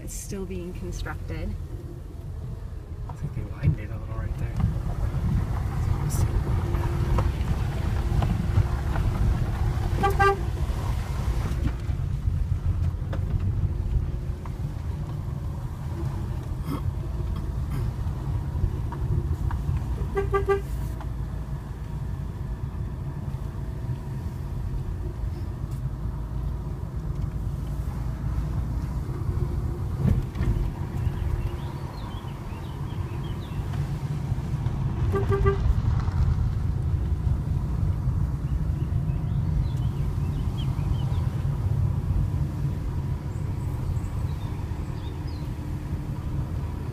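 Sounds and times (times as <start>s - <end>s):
engine and road rumble: 0.0s - 46.9s
car horn beeping: 9.9s - 10.6s, 20.0s - 20.8s, 35.0s - 35.7s.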